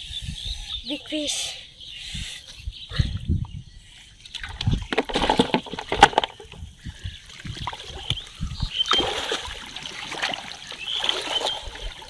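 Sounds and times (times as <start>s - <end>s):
water splashing and sloshing: 4.2s - 12.0s.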